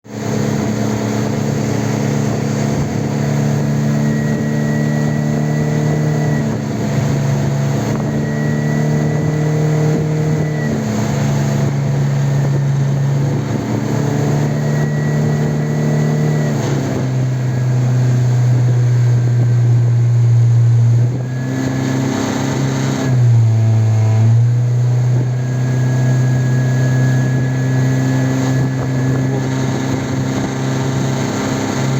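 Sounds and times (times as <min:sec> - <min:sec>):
outboard motor running: 0:00.0 - 0:31.9
thin high whistle: 0:03.9 - 0:06.6, 0:07.9 - 0:10.9.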